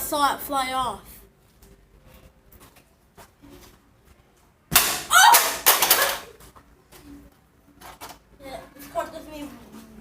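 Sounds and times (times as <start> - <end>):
toy car hitting and clattering: 4.7 - 6.3.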